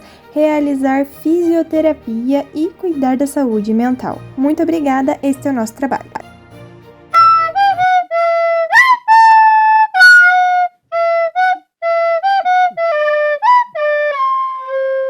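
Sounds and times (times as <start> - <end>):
single-line instrumental melody: 0.0 - 8.6.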